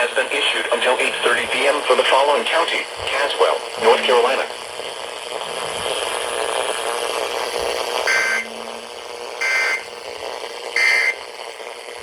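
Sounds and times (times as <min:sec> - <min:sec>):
radio hiss: 0:00.0 - 0:12.0
two-tone data bursts: 0:08.0 - 0:10.0, 0:10.8 - 0:11.3.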